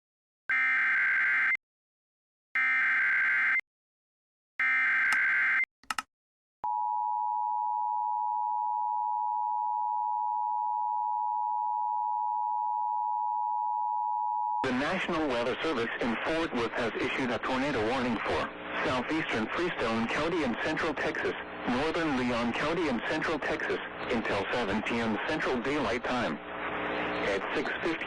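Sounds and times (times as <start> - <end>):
short blip: 5.8 - 6.0.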